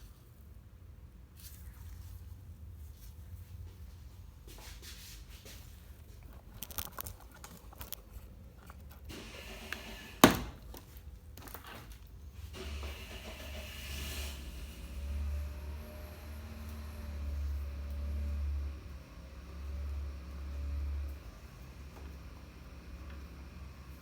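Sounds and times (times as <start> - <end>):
light clicks and scrapes: 1.3 - 9.9.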